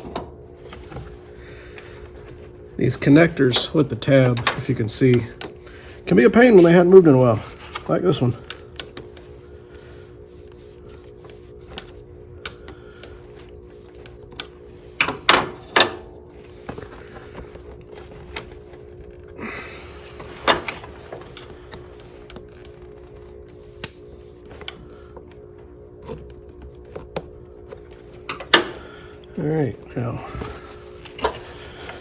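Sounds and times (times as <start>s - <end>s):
steady hum: 0.0s - 32.0s.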